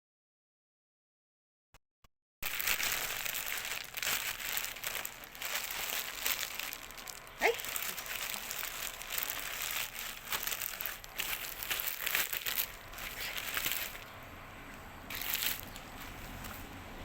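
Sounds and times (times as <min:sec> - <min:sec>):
packaging crinkling and rustling: 0:02.4 - 0:14.1, 0:15.1 - 0:16.8.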